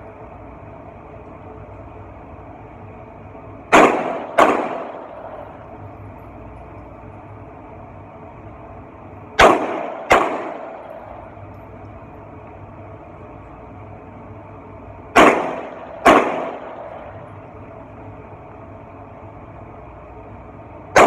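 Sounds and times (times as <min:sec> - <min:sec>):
pistol shots echoing indoors: 0:03.7 - 0:05.6, 0:09.4 - 0:11.2, 0:15.1 - 0:17.1.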